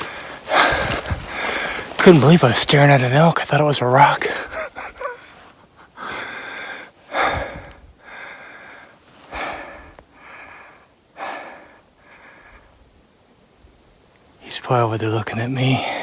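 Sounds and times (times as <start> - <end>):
man breathing: 0.0 - 2.1, 4.2 - 12.8.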